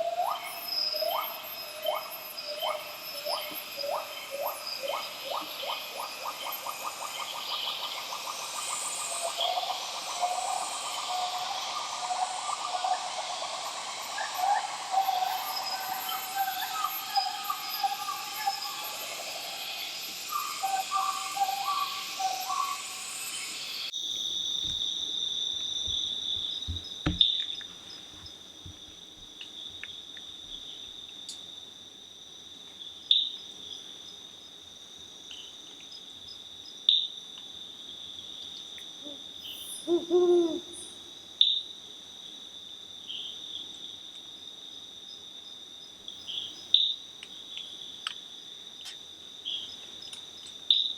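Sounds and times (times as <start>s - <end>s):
high insect trill: 0.0s - 50.9s
insects and birds chorus: 0.0s - 50.9s
low hooting call: 39.8s - 41.0s.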